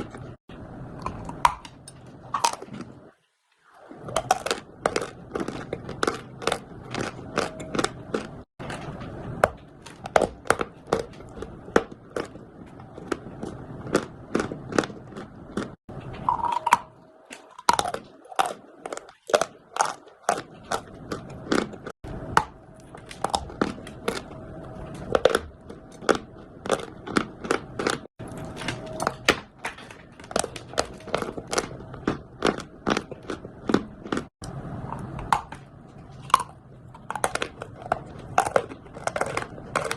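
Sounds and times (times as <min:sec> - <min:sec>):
chalk crunching while chewed: 0:04.1 - 0:08.5, 0:09.9 - 0:15.8, 0:17.4 - 0:22.0, 0:22.8 - 0:28.1, 0:36.2 - 0:39.9.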